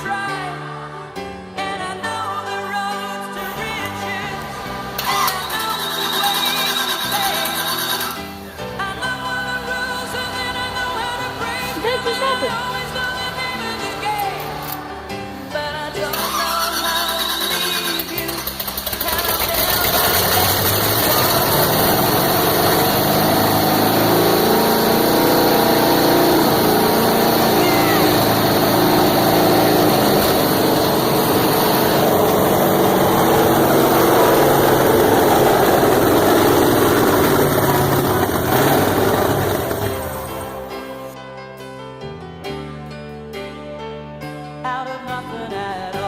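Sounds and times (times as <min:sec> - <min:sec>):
engine running steadily: 0:09.5 - 0:41.1.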